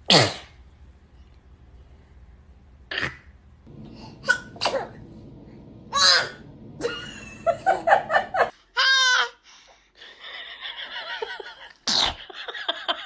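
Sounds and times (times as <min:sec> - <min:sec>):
loud sneeze: 0:00.0 - 0:00.6, 0:11.9 - 0:12.2
laughter in short bursts: 0:06.8 - 0:08.5.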